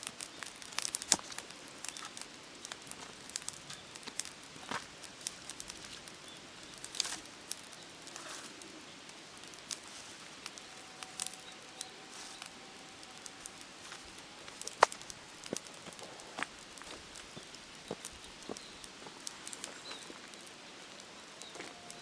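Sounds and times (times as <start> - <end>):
light clicks and crackles: 0.0 - 22.0
faint steady tone: 7.5 - 15.5.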